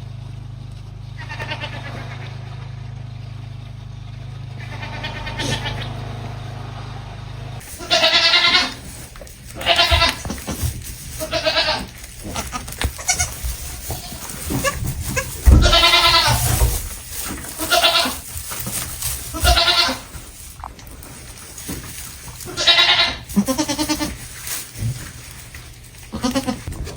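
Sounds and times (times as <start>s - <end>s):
baby goats bleating: 1.2s - 2.4s, 4.6s - 6.1s, 7.6s - 20.6s, 21.6s - 26.8s.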